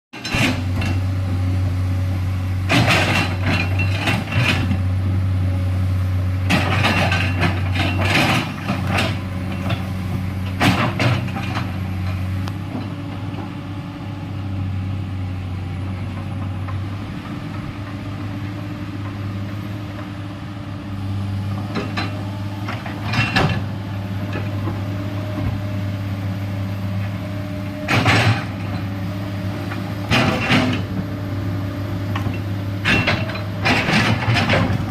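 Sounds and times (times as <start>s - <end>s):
metal clanking and scraping: 0.2s - 1.1s, 2.7s - 4.8s, 6.5s - 12.9s, 21.7s - 24.9s, 27.8s - 29.0s, 29.7s - 30.9s, 32.1s - 34.9s
excavator diesel engine humming: 0.2s - 34.9s.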